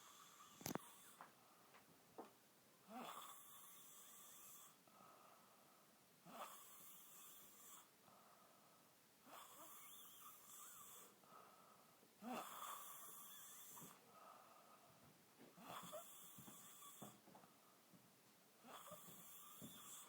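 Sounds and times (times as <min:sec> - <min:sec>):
slow quiet snoring: 0:00.0 - 0:01.4, 0:02.9 - 0:05.4, 0:06.2 - 0:08.4, 0:09.2 - 0:11.5, 0:12.2 - 0:14.9, 0:15.5 - 0:17.2, 0:18.6 - 0:20.0.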